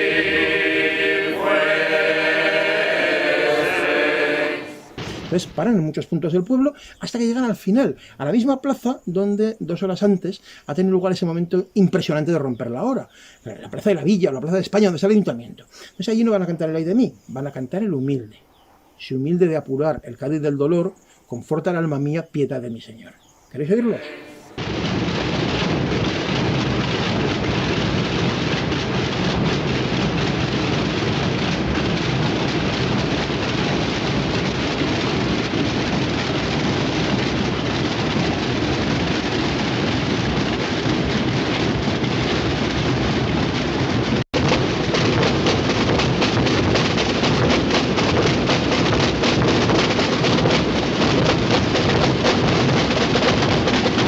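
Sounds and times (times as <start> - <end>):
many drums rolling: 0.0 - 5.1, 23.8 - 54.0.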